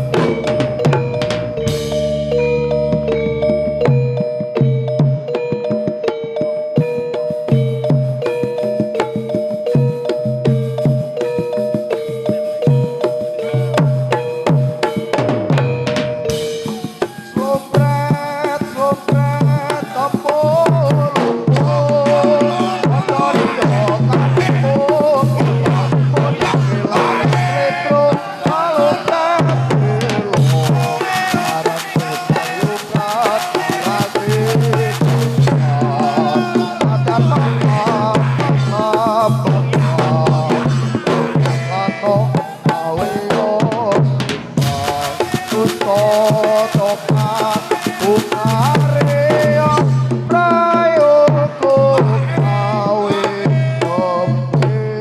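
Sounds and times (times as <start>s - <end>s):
wavering melody line: 0.0s - 29.1s
hand drums playing: 0.0s - 55.0s.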